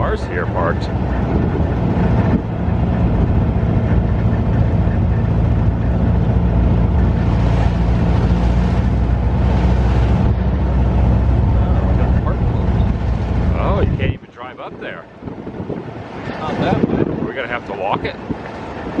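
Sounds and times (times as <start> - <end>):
vehicle engine running: 0.0 - 14.2
road and wind noise: 0.0 - 19.0.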